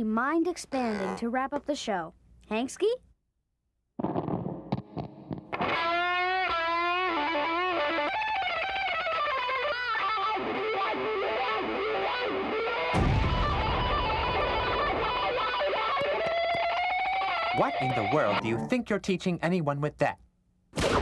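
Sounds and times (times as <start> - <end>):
distorted electric guitar rock: 4.0 - 18.6.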